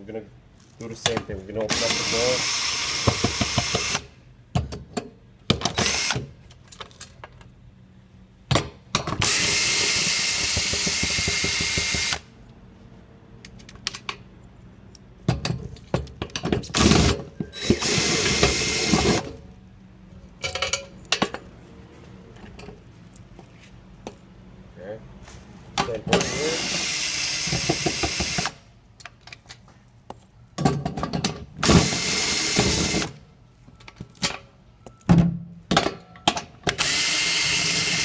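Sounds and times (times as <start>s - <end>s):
power screwdriver whirring: 1.7s - 4.1s, 5.8s - 6.2s, 9.2s - 12.3s, 16.8s - 19.3s, 36.7s - 38.0s
sharp clicks and knocks: 14.9s - 17.8s.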